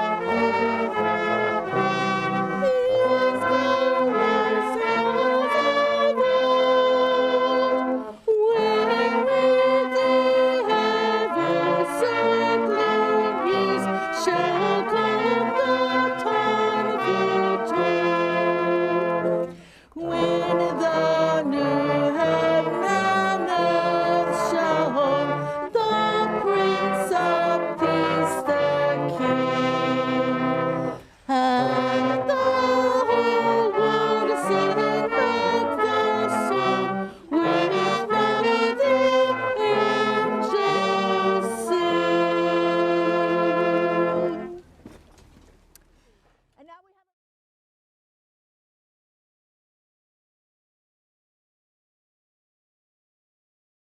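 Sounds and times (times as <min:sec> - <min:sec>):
brass band playing a carol: 0:00.0 - 0:45.0.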